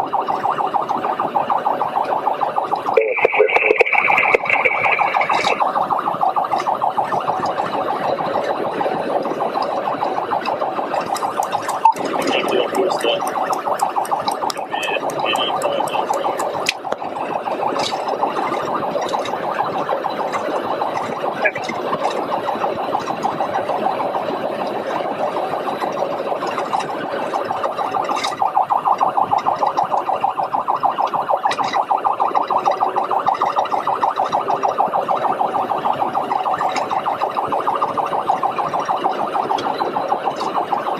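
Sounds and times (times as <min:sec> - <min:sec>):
police siren pulsing: 0:00.0 - 0:40.9
sharp clicks: 0:08.9 - 0:23.3.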